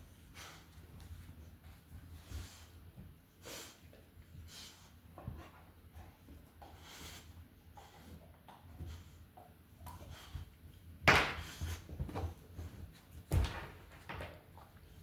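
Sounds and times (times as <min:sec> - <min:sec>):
puppy scuffling: 0:10.4 - 0:15.0.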